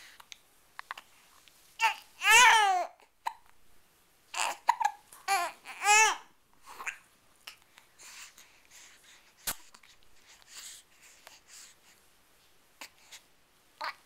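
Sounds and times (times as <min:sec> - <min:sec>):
baby cooing: 0:01.8 - 0:03.5, 0:04.3 - 0:07.6, 0:13.8 - 0:14.0.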